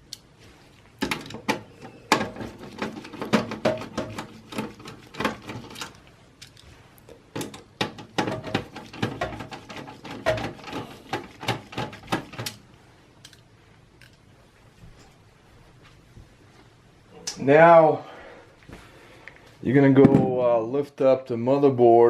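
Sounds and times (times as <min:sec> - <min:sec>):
small parts being handled: 0:01.0 - 0:12.6, 0:13.2 - 0:14.3.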